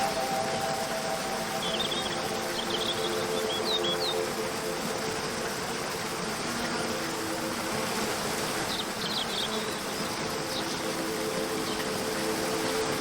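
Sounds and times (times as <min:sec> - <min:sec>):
bird chirps: 0:00.0 - 0:04.3
soft droning background music: 0:00.0 - 0:13.0
waterfall rushing: 0:00.0 - 0:13.0.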